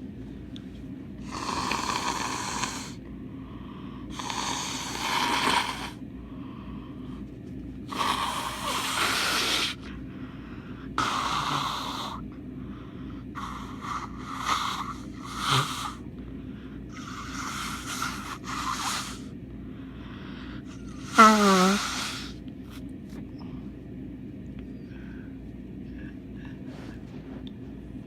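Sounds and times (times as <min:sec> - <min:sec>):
congested nose breathing: 0:01.2 - 0:07.2, 0:07.9 - 0:12.2, 0:12.8 - 0:16.0, 0:16.6 - 0:22.4.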